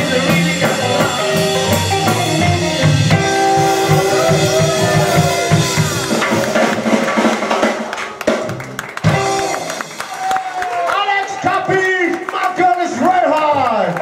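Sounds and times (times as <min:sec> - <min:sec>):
drum kit: 0:00.0 - 0:11.1
rock band playing: 0:00.0 - 0:11.4.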